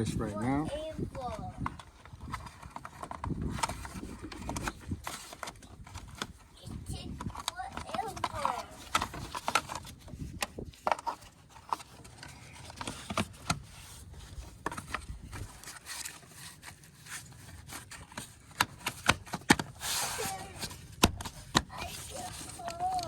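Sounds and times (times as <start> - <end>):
clicks and knocks on car parts: 21.0 - 21.7.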